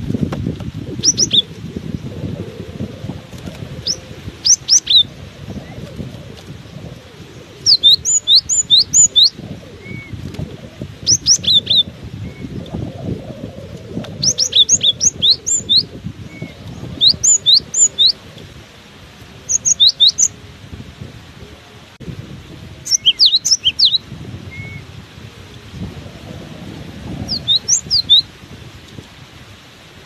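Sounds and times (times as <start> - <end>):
wind buffeting microphone: 0.0 - 30.0
bird whistled song: 1.0 - 1.5, 3.8 - 5.1, 7.6 - 10.1, 11.1 - 12.6, 14.2 - 18.2, 19.5 - 20.4, 22.8 - 24.9, 27.3 - 28.3.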